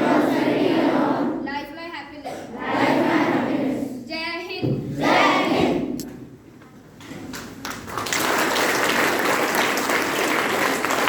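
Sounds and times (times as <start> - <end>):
audience applauding: 7.3 - 11.0.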